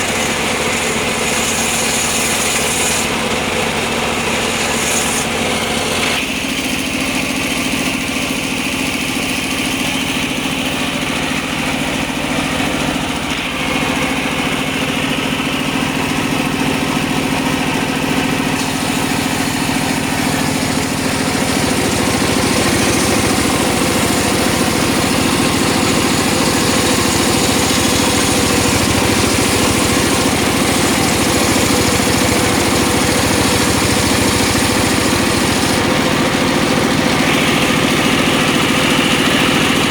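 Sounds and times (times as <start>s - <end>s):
sawmill engine running: 0.0s - 39.9s.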